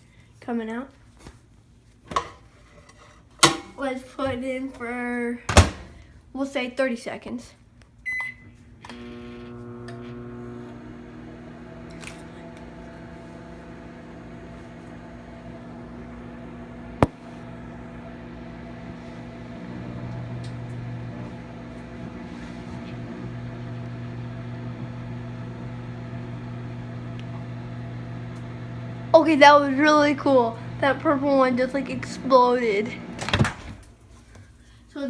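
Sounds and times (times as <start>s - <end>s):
microwave oven humming: 8.9s - 33.9s.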